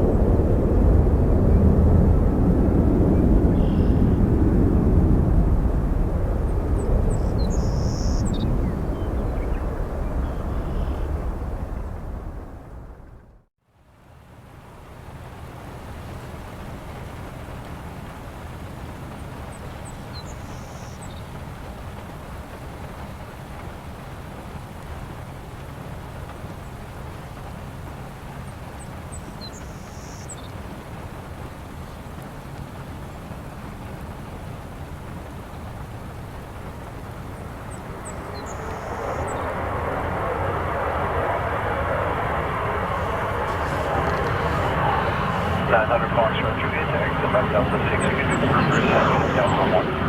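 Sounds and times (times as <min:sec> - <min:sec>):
airliner engine roar: 0:00.0 - 0:13.5, 0:14.1 - 0:50.0
low rushing rumble: 0:00.0 - 0:13.5, 0:35.2 - 0:50.0.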